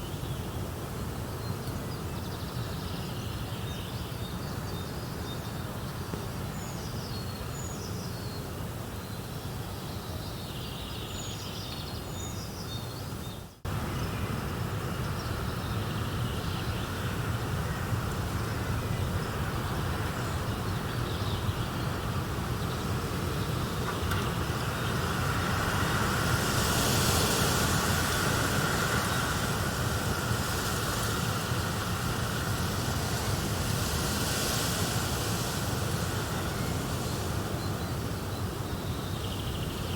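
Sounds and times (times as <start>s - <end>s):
wind blowing: 13.7s - 39.9s
leaves rustling: 21.4s - 38.6s.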